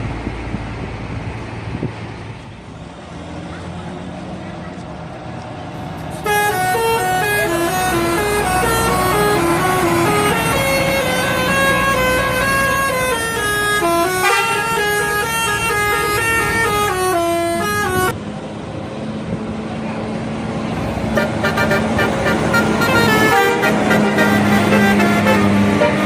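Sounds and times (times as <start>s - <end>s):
multi-trumpet air horn tune: 6.1s - 18.1s, 21.2s - 26.0s.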